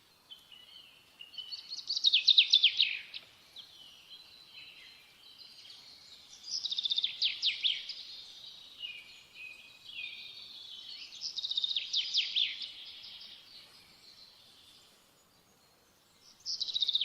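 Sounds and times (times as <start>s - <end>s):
bird chirps: 0.3s - 17.0s.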